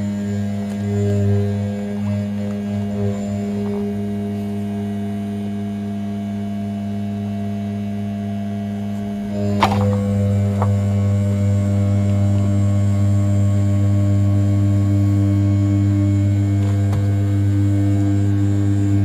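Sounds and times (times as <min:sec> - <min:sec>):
milling spindle humming: 0:00.0 - 0:04.9.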